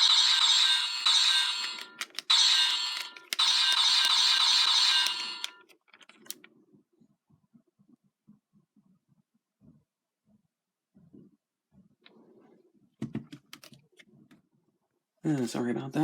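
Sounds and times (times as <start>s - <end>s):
toy electronic sound effects: 0.0s - 5.6s.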